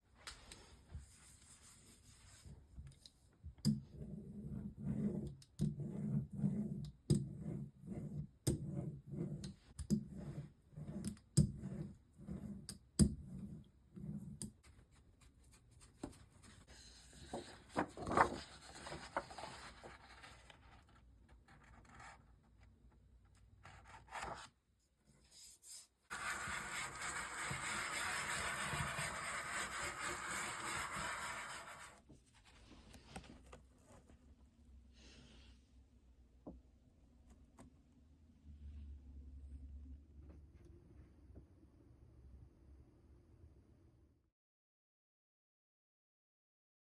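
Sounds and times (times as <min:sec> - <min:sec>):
scratchy scrapes: 0:25.2 - 0:34.1
rhythmic rubbing strokes: 0:26.1 - 0:32.0.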